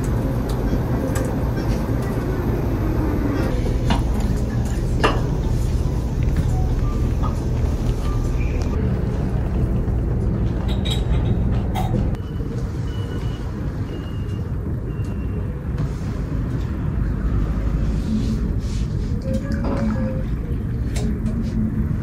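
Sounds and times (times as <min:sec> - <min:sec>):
rumble of passing vehicles: 0:00.0 - 0:19.2.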